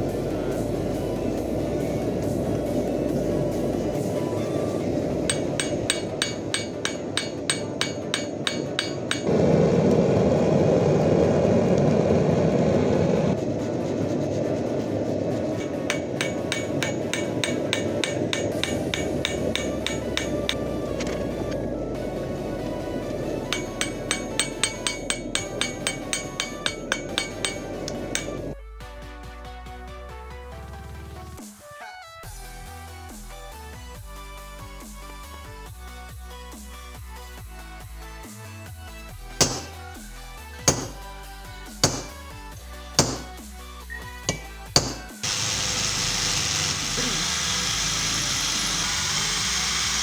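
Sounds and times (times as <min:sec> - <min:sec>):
background music: 0:00.0 - 0:09.3, 0:15.6 - 0:45.3
constant rushing noise: 0:00.0 - 0:28.6
hammer striking sheet metal: 0:05.2 - 0:09.3, 0:15.6 - 0:20.6, 0:23.4 - 0:28.6, 0:39.4 - 0:39.8, 0:40.7 - 0:41.0, 0:41.8 - 0:42.2, 0:43.0 - 0:43.4, 0:44.3 - 0:45.3.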